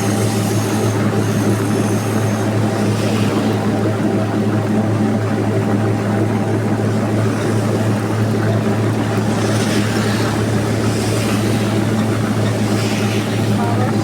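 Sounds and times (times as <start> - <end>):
heavy rain falling: 0.0 - 14.0
low motor-like hum: 0.0 - 14.0.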